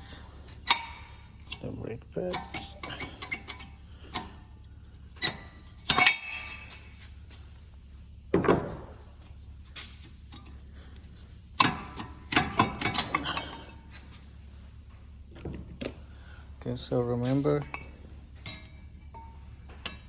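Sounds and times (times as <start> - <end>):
metal clinks and knocks: 0.0 - 7.1, 9.8 - 14.2, 16.8 - 20.0
steady low hum: 0.0 - 20.0
heavy metal clunk: 8.3 - 9.1.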